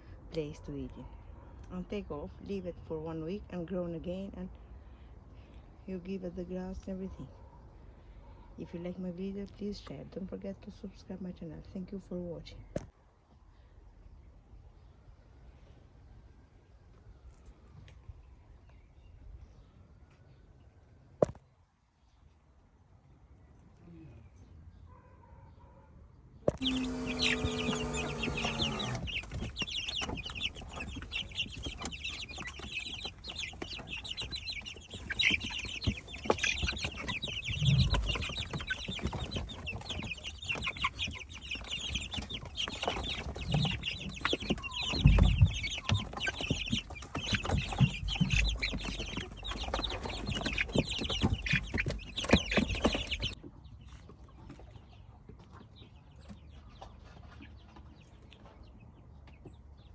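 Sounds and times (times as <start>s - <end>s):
chickens clucking: 26.5s - 59.7s.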